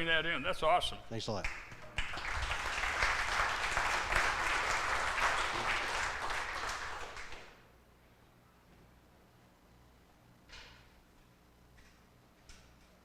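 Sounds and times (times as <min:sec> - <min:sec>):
small audience applauding: 0:01.4 - 0:07.6.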